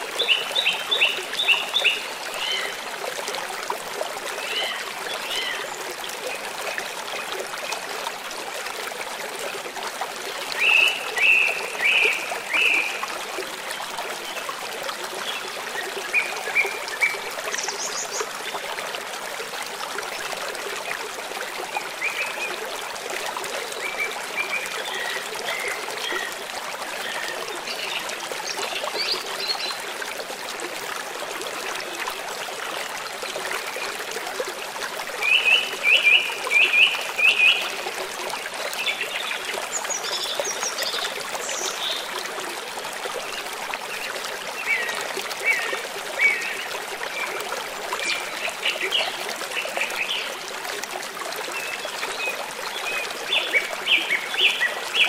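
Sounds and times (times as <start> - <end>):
stream water trickling: 0.0 - 55.0.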